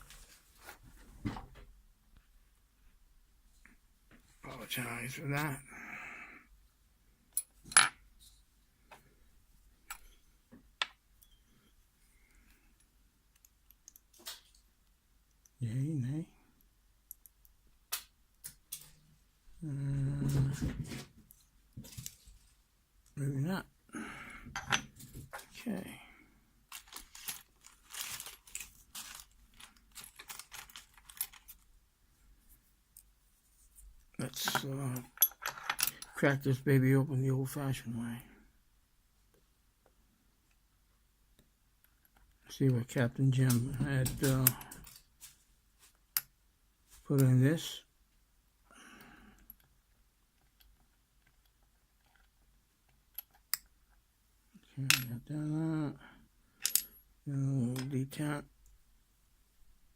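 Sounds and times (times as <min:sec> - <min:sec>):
small metal parts clinking: 0:26.7 - 0:31.6, 0:34.4 - 0:36.1, 0:56.6 - 0:57.0.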